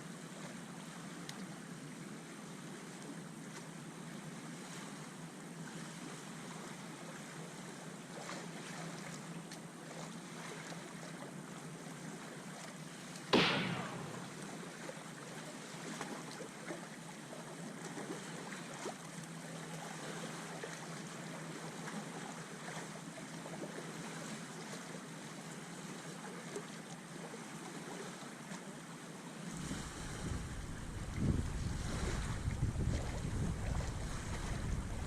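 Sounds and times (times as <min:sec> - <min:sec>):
faint water: 0:00.0 - 0:35.0
wind buffeting microphone: 0:30.0 - 0:35.0
wind noise: 0:30.0 - 0:35.0.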